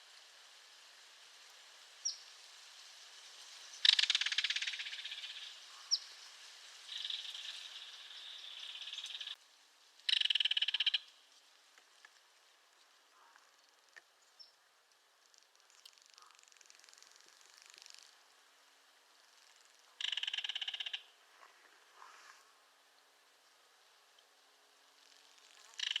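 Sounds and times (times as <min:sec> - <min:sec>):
kingfisher rattling call: 0:03.8 - 0:06.0, 0:06.9 - 0:09.4, 0:10.1 - 0:11.1, 0:19.4 - 0:21.1, 0:25.0 - 0:26.0
high bird chirps: 0:06.9 - 0:09.4, 0:10.1 - 0:11.0, 0:20.0 - 0:21.0.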